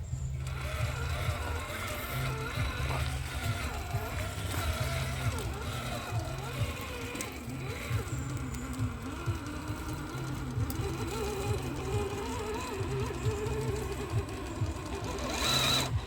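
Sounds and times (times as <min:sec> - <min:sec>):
electric motor whining: 0:00.0 - 0:16.0.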